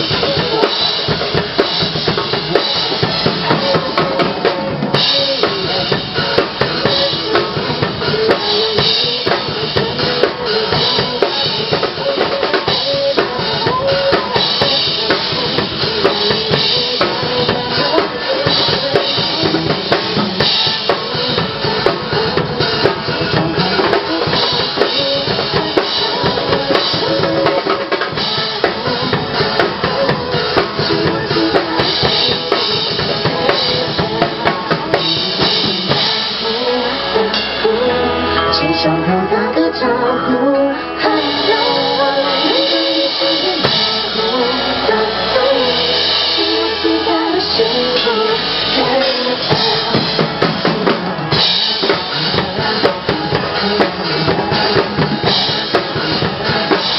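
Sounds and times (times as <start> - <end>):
drum kit beat: 0.0 - 39.5, 41.0 - 56.9
background music: 0.0 - 56.9.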